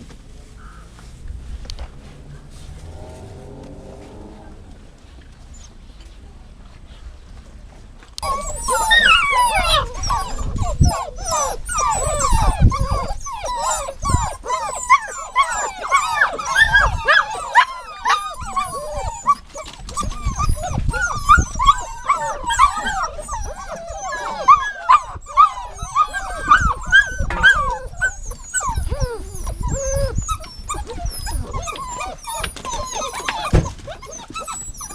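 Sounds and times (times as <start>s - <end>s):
dog whining and whimpering: 8.2s - 34.9s.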